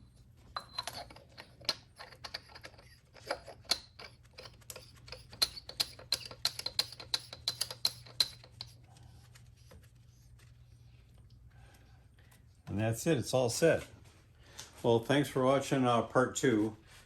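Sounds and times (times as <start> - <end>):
canister screwing clicks: 0.6 - 8.8.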